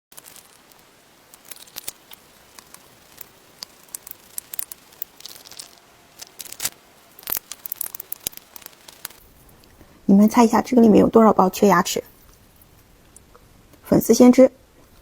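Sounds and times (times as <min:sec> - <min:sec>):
plastic packaging crinkling: 0:00.1 - 0:09.8.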